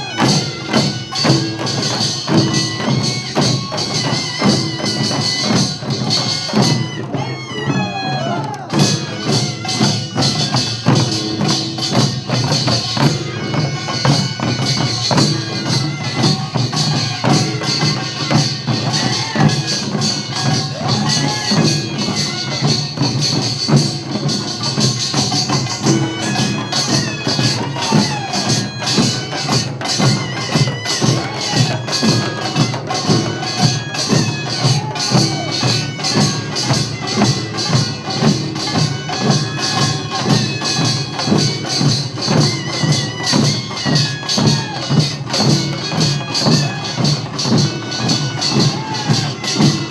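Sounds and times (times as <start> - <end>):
drums: 0.0 - 49.9.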